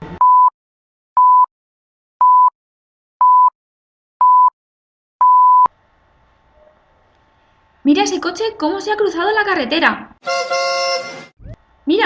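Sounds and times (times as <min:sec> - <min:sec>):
radio time signal beeps: 0:05.2 - 0:05.7.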